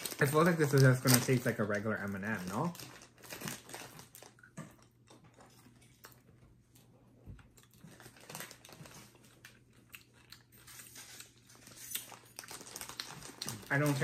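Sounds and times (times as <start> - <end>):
wrapper crinkling: 0.0 - 4.4, 7.7 - 14.0
crunching and chewing candy: 0.0 - 6.4, 7.4 - 14.0.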